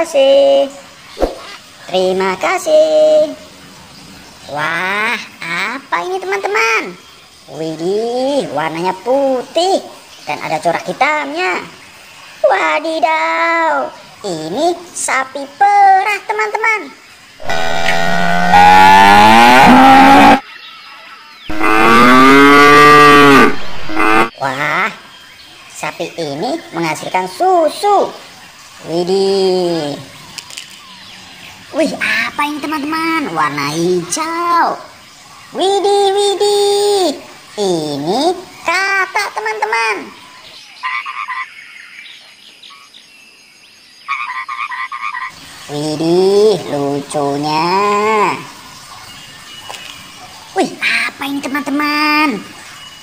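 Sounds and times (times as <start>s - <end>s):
cow mooing: 17.4s - 20.4s, 21.5s - 24.3s
frog croaking: 17.4s - 20.4s, 21.5s - 24.4s.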